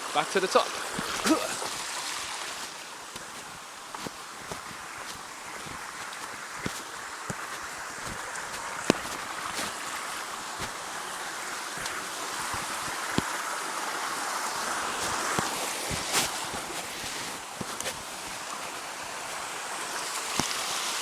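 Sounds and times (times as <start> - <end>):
waterfall rushing: 0.0 - 21.0.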